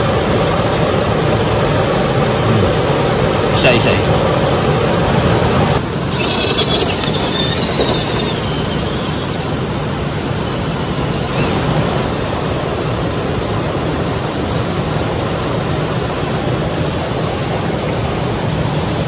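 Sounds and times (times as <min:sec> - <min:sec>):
rc car motor whining: 0:05.8 - 0:10.4.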